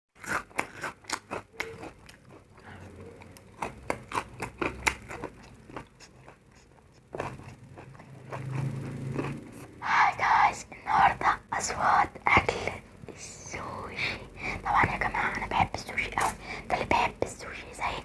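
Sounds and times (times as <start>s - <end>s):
crunching and chewing food: 0.2s - 13.2s.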